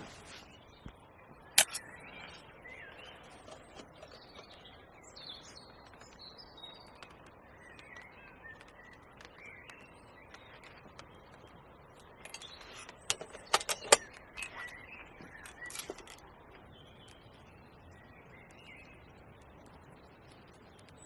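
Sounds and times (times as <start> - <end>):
small birds chirping: 0.0 - 21.0
sharp clicks and clinks: 1.6 - 1.9.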